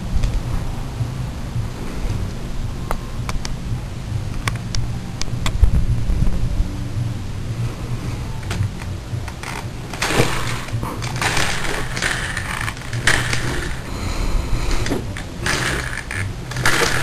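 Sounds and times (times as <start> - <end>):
rc truck engine rumble: 0.0 - 17.0
metallic rattling and clattering: 8.5 - 13.9, 14.6 - 17.0.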